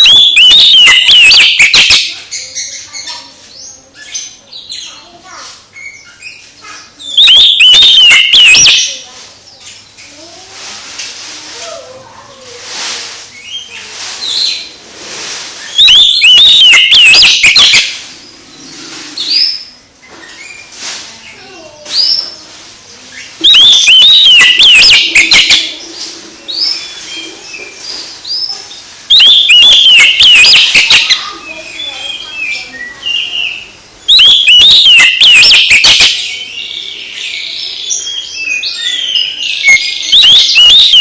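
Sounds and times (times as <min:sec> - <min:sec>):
quieter bird calls: 0:05.8 - 0:09.9, 0:15.6 - 0:41.0
bird singing whistles and chirps: 0:29.1 - 0:41.0.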